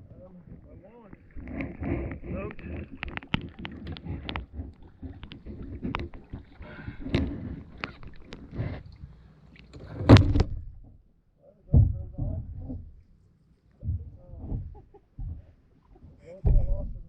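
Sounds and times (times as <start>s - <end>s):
low rumbling: 0.0s - 11.0s
water noise: 0.0s - 11.0s
loud thump: 9.9s - 10.9s, 11.7s - 12.8s
knocks on a kayak: 10.0s - 11.0s, 11.7s - 13.0s, 16.4s - 17.0s.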